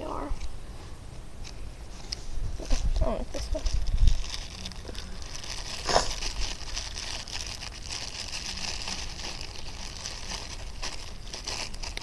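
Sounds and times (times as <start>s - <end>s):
plastic bag crinkling: 2.6s - 12.0s.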